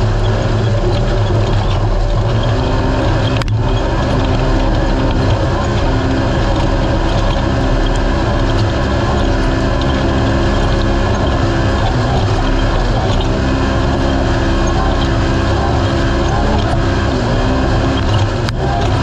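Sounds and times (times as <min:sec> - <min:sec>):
race car engine running hard: 0:00.0 - 0:19.0.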